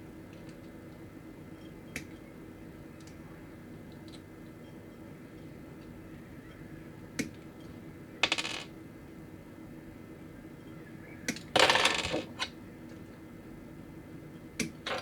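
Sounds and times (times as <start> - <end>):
plastic parts clicking and clattering: 11.6 - 12.4.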